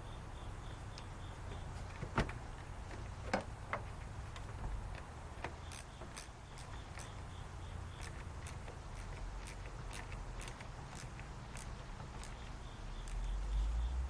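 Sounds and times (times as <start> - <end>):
steady low hum: 0.0 - 14.0
wrench clicking on metal: 2.9 - 13.7.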